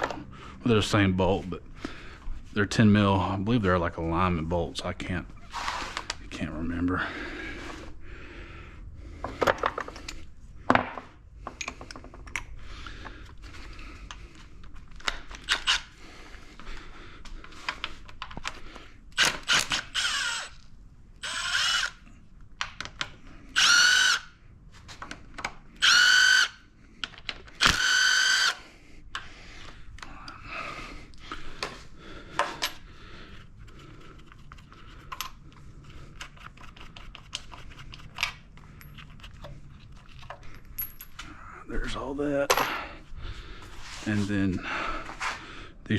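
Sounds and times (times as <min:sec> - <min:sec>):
power tool spinning bolts: 0:19.2 - 0:20.6, 0:21.2 - 0:22.0, 0:23.6 - 0:24.3, 0:25.8 - 0:26.6, 0:27.5 - 0:28.6
tools and metal parts clicking: 0:36.1 - 0:41.3.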